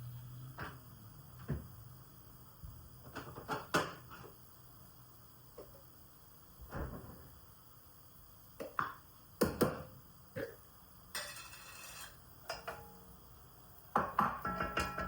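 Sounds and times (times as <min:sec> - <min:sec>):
dishes and utensils clinking: 0:11.1 - 0:13.0, 0:14.0 - 0:15.0.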